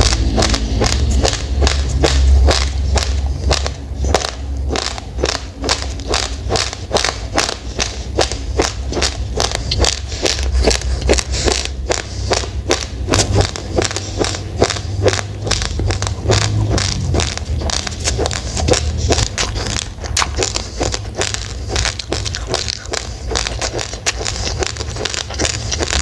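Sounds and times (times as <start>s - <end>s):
low rumble: 0.0s - 26.0s
rice grains crunched by teeth: 0.0s - 26.0s.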